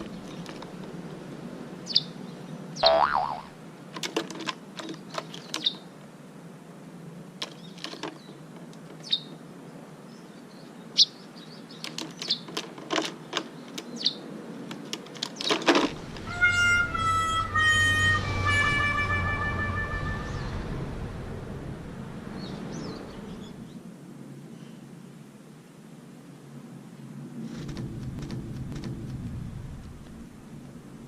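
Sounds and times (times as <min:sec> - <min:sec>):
bird chirping: 0:01.8 - 0:03.5, 0:04.8 - 0:05.9, 0:09.0 - 0:09.4, 0:10.1 - 0:12.5, 0:13.2 - 0:14.3, 0:16.3 - 0:20.8, 0:22.4 - 0:23.8
music: 0:16.3 - 0:20.4.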